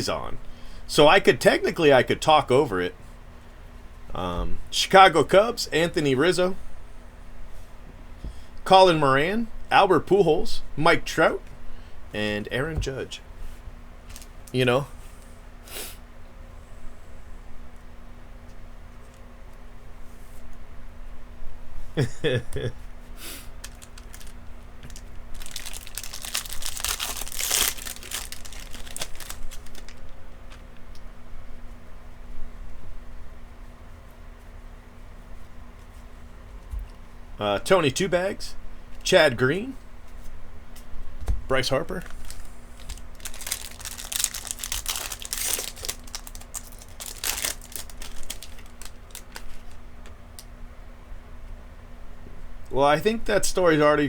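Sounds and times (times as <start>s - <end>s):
foil wrapper crinkling: 14.1s - 14.5s, 23.6s - 30.1s, 42.0s - 49.8s.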